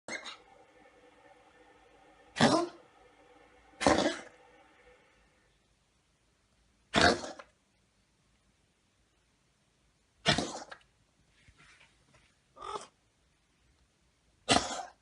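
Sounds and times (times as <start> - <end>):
cat coughing: 14.5 - 15.0.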